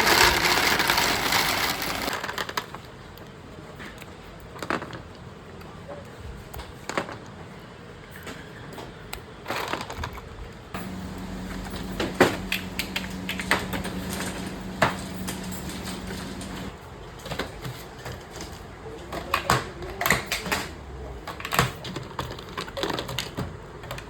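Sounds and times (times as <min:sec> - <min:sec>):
machine hum: 0:00.0 - 0:02.1, 0:10.8 - 0:16.8
knocks and clatters of objects: 0:09.5 - 0:24.0.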